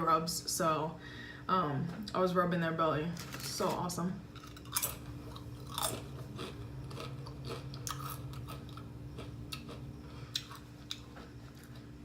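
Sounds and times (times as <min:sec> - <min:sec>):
person chewing: 0:04.3 - 0:12.0.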